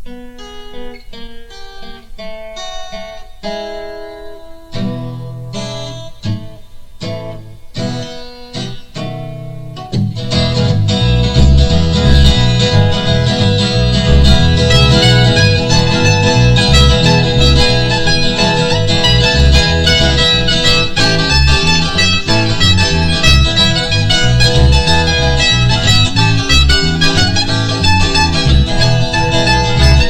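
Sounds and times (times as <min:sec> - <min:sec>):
picked acoustic guitar: 0:00.0 - 0:30.0
bass: 0:04.8 - 0:30.0
strings: 0:09.8 - 0:30.0.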